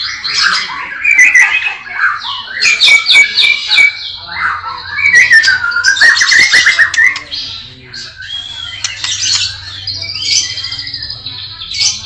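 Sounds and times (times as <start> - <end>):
bird singing varied song: 0.0 - 12.0.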